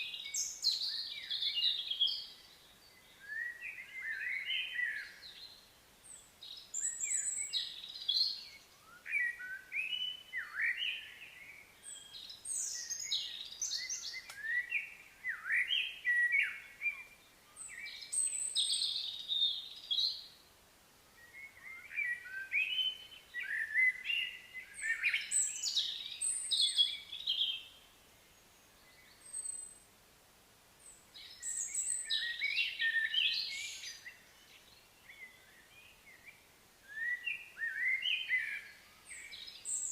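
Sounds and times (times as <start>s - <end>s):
birds chirping and whistling: 6.7s - 11.2s, 21.3s - 27.7s, 31.2s - 34.2s, 36.9s - 39.9s.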